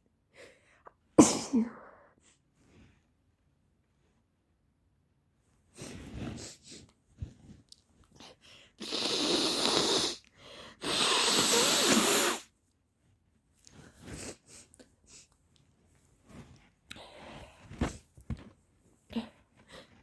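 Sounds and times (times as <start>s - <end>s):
person blowing nose: 8.8s - 10.2s, 10.8s - 12.5s
person sniffling: 8.8s - 12.5s.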